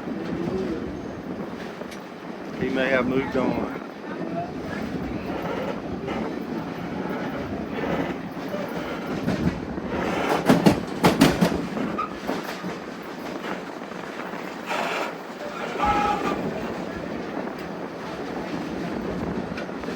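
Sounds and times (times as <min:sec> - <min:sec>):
railcar rumbling along track: 0:00.0 - 0:19.9
wheel clacks over rail joints: 0:04.6 - 0:19.9.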